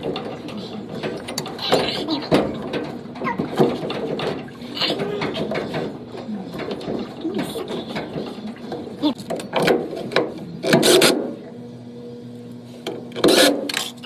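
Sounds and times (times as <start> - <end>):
ratcheting clicks and knocks: 0.0 - 11.1
metal clanks: 0.0 - 11.4
steady low hum: 0.0 - 14.0.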